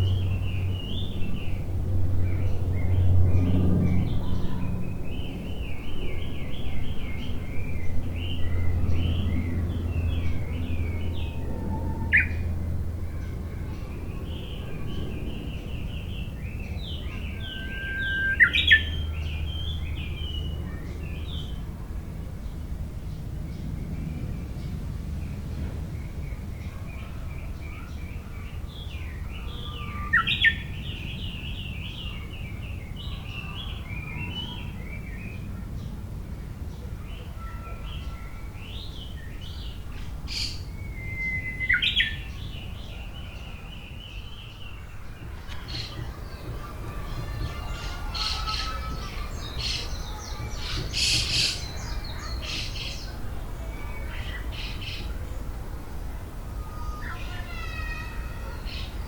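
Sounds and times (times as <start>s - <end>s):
low rumble: 0.0s - 13.4s
birds chirping: 0.0s - 21.7s, 22.4s - 59.0s
birds squawking: 47.5s - 49.9s.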